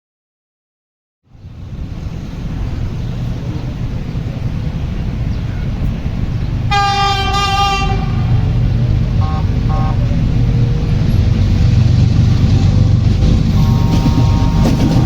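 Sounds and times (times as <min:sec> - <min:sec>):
locomotive rumble: 0:01.3 - 0:15.0
locomotive air horn blast: 0:06.7 - 0:15.0.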